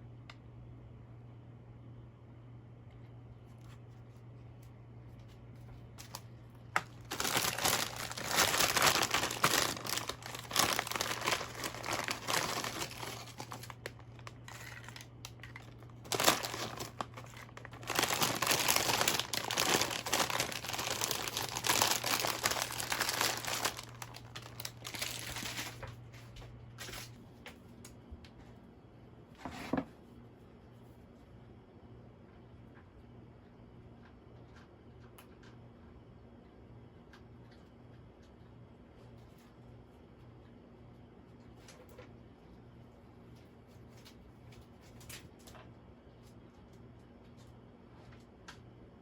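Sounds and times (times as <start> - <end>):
low steady hum: 0.0 - 49.0
packaging crinkling: 6.0 - 25.9.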